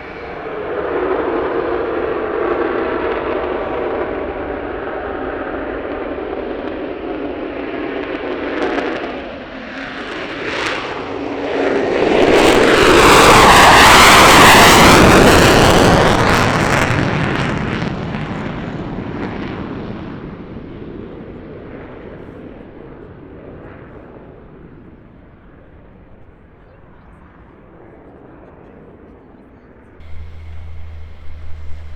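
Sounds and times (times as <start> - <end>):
fighter jet passing by: 0.0 - 2.3, 30.0 - 31.9.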